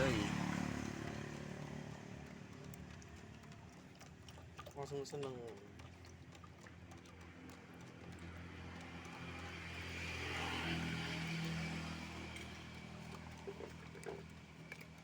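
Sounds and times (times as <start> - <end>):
vehicle passing: 0.0 - 3.6, 6.8 - 15.0.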